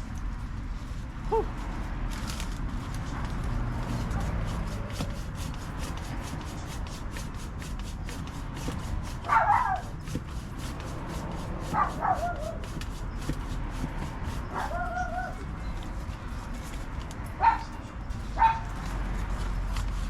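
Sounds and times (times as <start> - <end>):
dog barking high yelps: 1.3 - 1.5, 9.2 - 9.9, 11.7 - 12.6, 14.5 - 15.4, 17.4 - 17.8, 18.4 - 18.7.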